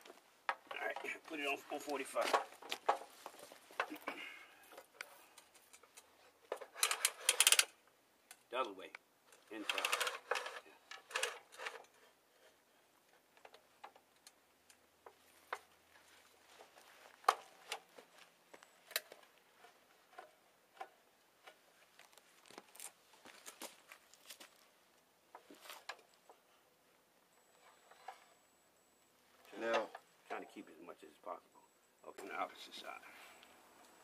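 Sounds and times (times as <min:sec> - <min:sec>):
tools and lumber clicking: 0:00.4 - 0:08.5, 0:09.3 - 0:15.8, 0:16.6 - 0:23.7, 0:25.3 - 0:26.5.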